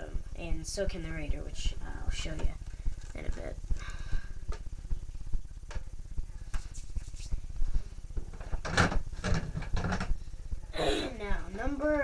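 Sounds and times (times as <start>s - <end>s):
plastic clacks and rattles: 8.2s - 10.1s.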